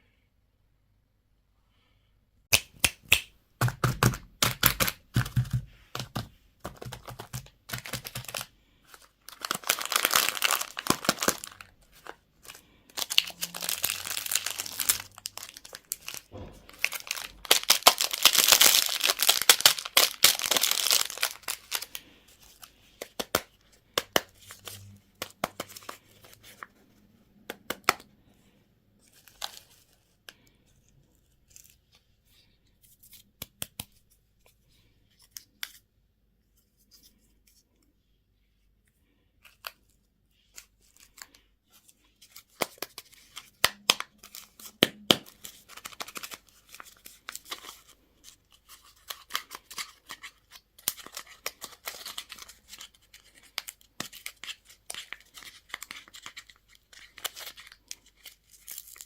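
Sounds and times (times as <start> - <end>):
plastic packaging crinkling: 4.4 - 23.5, 42.2 - 59.0.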